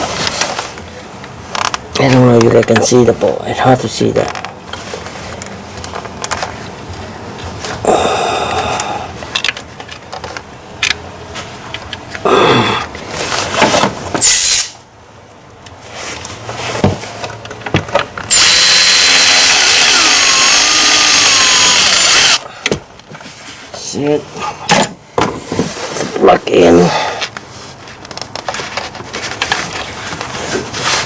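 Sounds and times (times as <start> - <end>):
power tool driving a bolt: 14.2 - 14.8, 18.3 - 22.4.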